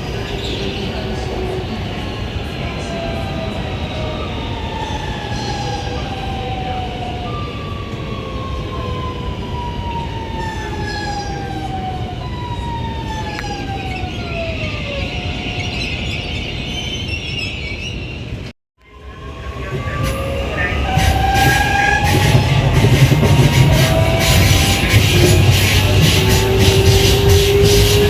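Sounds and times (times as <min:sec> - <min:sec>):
train rumbling on rails: 0:00.0 - 0:28.0
train motor whine: 0:18.9 - 0:28.0.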